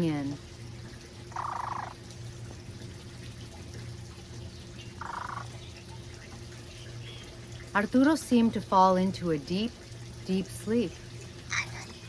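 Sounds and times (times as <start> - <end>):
parrot croaking calls: 1.3 - 2.0, 4.9 - 5.6.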